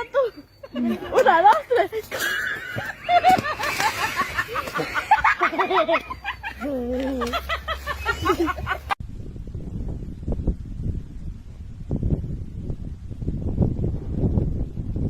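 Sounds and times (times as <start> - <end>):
people laughing: 0.0 - 9.0
person crying out: 6.6 - 7.4
wind rumble on microphone: 7.7 - 15.0.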